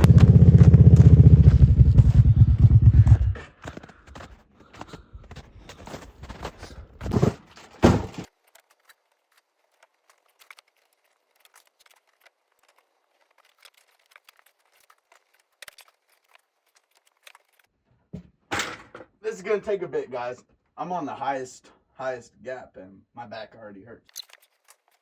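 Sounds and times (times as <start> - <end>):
rustling and scraping handling noise: 5.4 - 18.3, 24.0 - 25.0.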